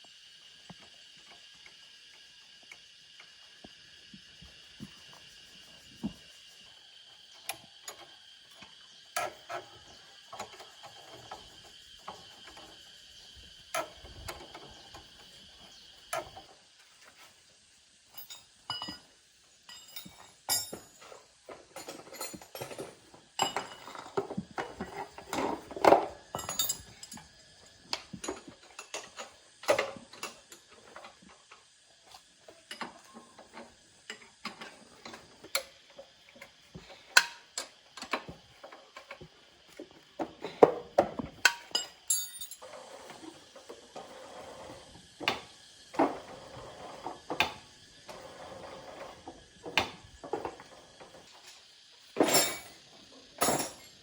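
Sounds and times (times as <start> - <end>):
metallic clinks and knocks: 18.1 - 19.1, 19.7 - 21.1, 26.3 - 27.3, 41.5 - 42.6, 52.2 - 52.8.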